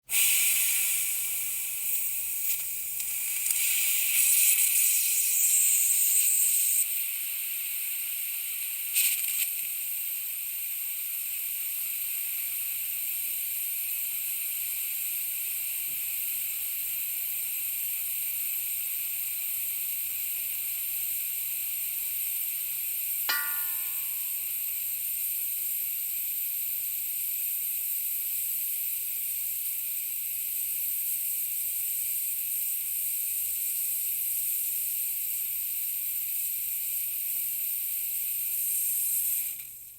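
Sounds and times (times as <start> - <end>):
compressed air hissing: 0.0 - 9.6.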